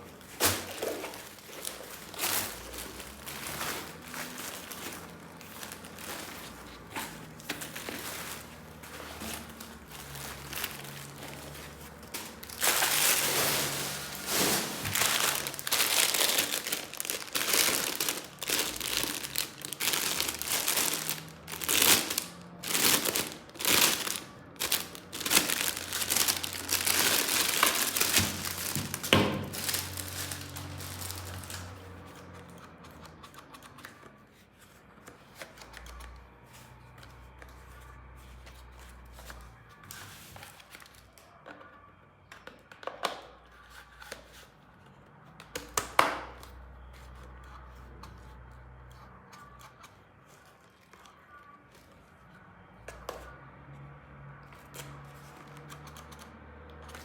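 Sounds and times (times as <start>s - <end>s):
packaging crinkling: 0.1s - 32.0s.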